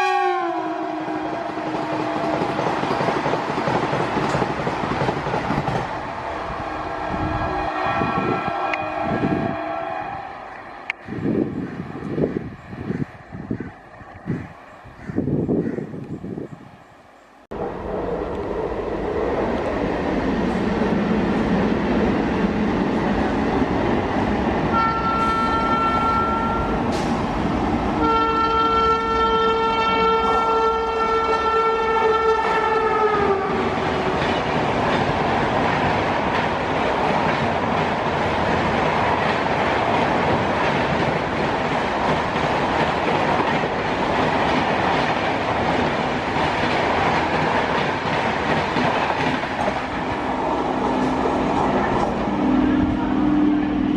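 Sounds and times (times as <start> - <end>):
train horn blasts: 0.0 - 2.4, 6.6 - 10.5, 24.7 - 27.1, 28.0 - 34.2, 51.8 - 53.9
train coaches rushing past: 0.0 - 15.6, 16.3 - 53.9.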